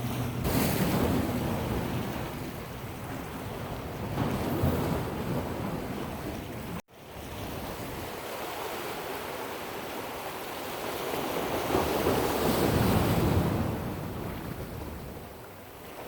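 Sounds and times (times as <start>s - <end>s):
wind buffeting microphone: 0.0s - 8.2s, 11.4s - 16.0s
ocean waves washing: 0.0s - 16.0s.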